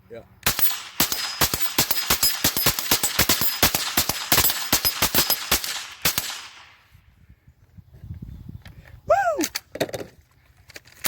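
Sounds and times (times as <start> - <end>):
rapid gunshots: 0.5 - 6.7.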